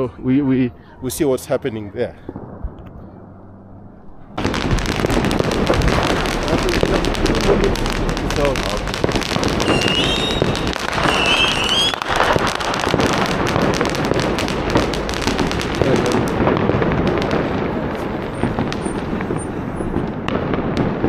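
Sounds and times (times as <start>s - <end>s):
firecrackers crackling: 2.2s - 21.0s
short high whistles: 9.6s - 12.0s.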